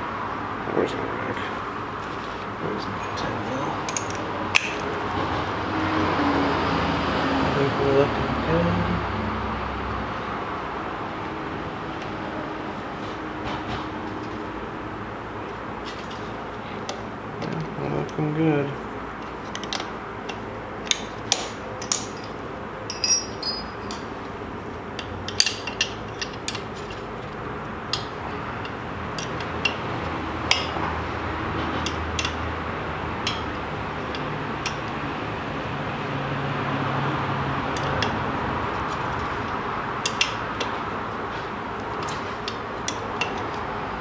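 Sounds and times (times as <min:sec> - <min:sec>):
ratchet and tool clinks: 0:03.9 - 0:04.8, 0:20.8 - 0:24.1.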